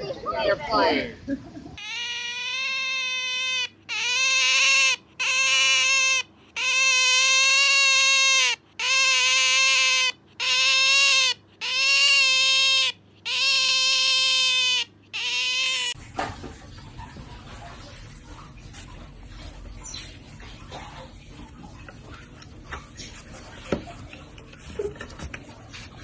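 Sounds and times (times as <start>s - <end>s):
otter high-pitched calls: 1.8s - 16.0s.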